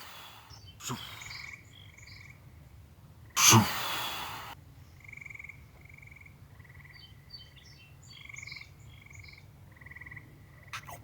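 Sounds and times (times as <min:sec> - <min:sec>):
frogs calling: 0:00.8 - 0:02.4, 0:08.2 - 0:11.0.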